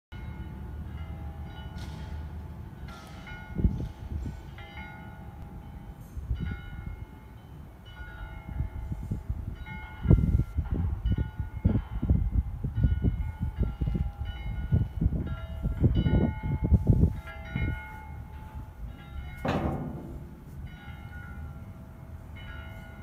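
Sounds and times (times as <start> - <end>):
church bells ringing: 0.1 - 23.0
steady low rumble: 8.6 - 22.5.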